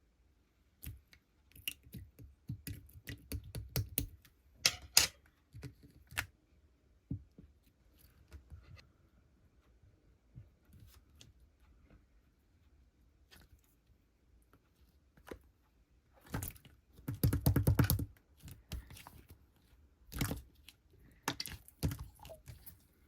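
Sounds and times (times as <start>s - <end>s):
slime squishing with sticky pops: 20.0s - 22.7s.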